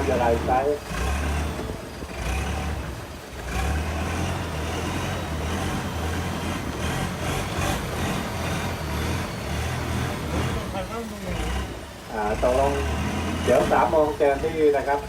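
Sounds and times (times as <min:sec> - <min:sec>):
boat engine idling: 0:00.0 - 0:15.0.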